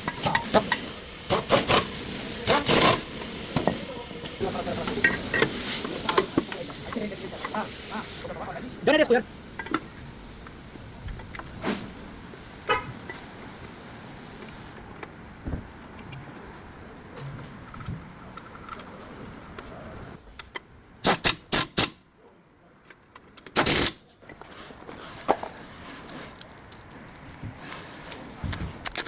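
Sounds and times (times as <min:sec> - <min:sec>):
loud noisy burst: 0:00.0 - 0:09.0.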